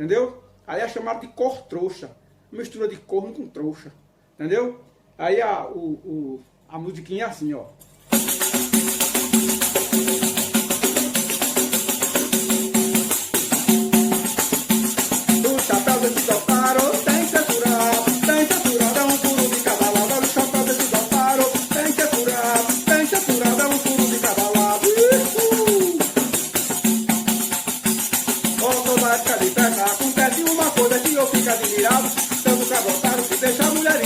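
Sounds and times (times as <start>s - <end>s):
tambourine jingles shaking: 8.0s - 34.0s
person singing: 15.4s - 26.3s, 28.6s - 34.0s.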